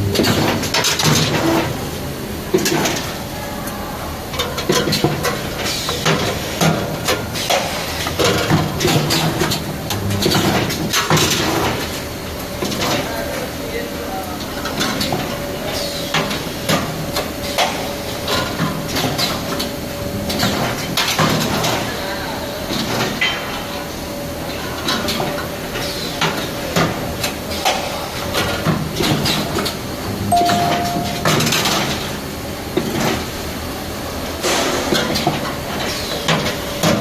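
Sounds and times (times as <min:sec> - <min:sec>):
brief high tone: 0:30.3 - 0:32.1.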